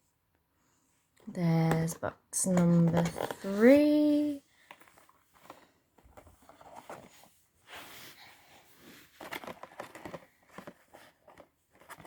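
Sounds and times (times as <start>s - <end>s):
cardboard rustling and scraping: 2.5s - 12.0s.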